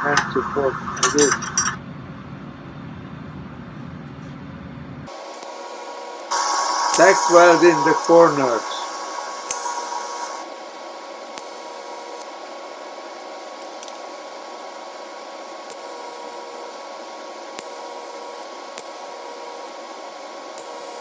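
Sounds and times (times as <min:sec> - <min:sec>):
welding torch hissing: 0:00.0 - 0:01.8, 0:05.1 - 0:21.0
faint whine: 0:00.0 - 0:04.4, 0:05.1 - 0:15.0.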